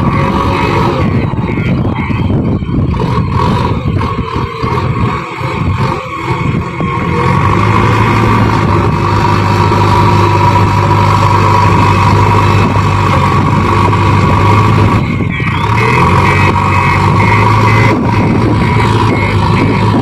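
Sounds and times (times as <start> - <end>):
diesel engine droning: 0.0 - 20.0.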